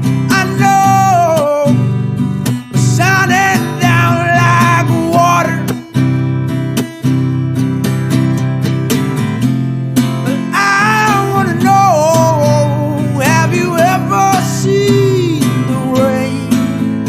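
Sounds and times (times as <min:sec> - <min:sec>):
man singing: 0:00.0 - 0:06.0, 0:10.2 - 0:17.0
acoustic guitar strumming: 0:00.0 - 0:17.0.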